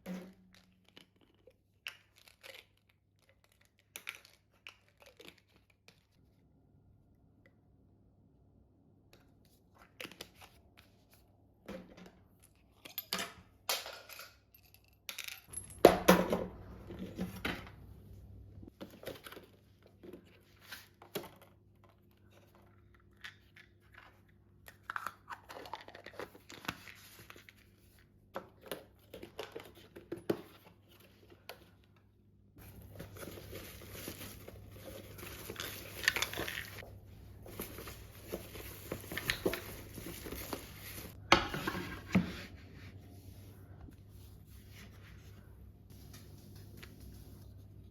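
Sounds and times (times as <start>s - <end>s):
food packaging crinkling and tearing: 32.6s - 36.8s.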